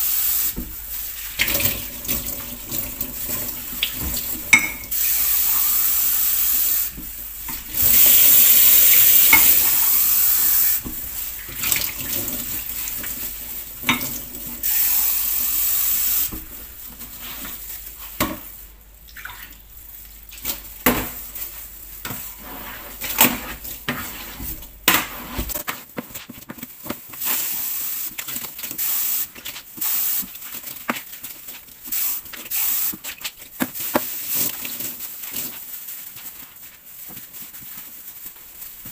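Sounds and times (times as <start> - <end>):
dishes and cutlery clinking: 4.1 - 5.0, 13.8 - 14.2
tap running: 6.9 - 13.2.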